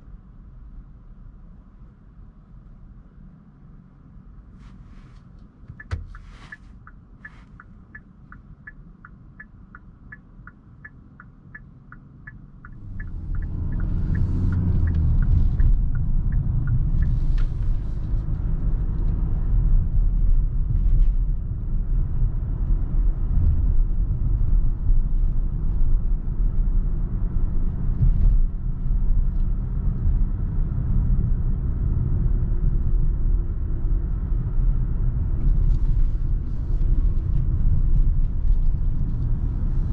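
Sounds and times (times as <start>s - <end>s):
engine and road rumble: 0.0s - 39.9s
car indicator ticking: 5.7s - 17.3s.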